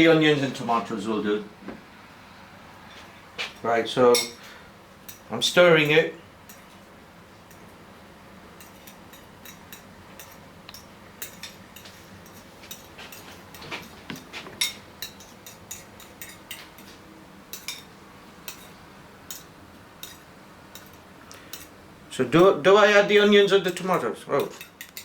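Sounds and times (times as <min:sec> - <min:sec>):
utensil clinking while stirring: 0:14.6 - 0:16.9, 0:23.6 - 0:25.0.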